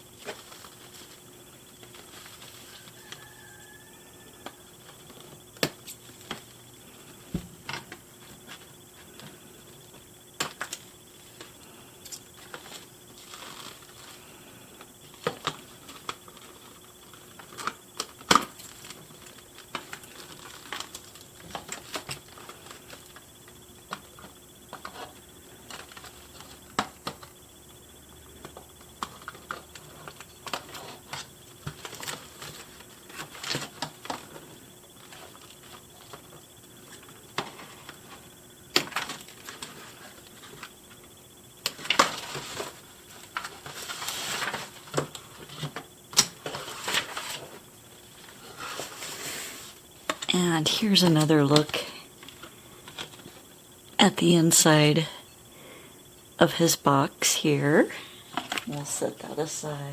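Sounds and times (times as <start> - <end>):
plastic crinkling: 12.4 - 14.2.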